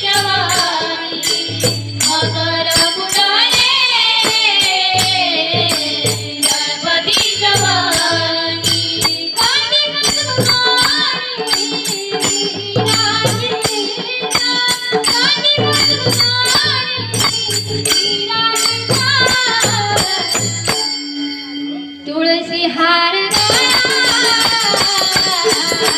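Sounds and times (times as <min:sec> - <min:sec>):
drum: 0:00.0 - 0:21.0, 0:23.3 - 0:25.9
bright metallic percussion strikes: 0:00.0 - 0:22.1, 0:23.3 - 0:25.9
person singing: 0:22.1 - 0:25.9.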